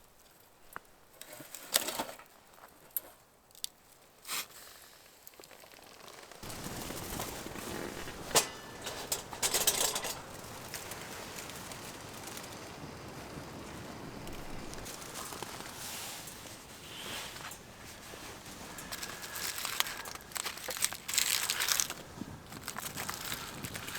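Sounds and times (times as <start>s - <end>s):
sharp cracks and crinkling rustles: 0.1s - 23.9s
wind noise: 6.4s - 23.9s.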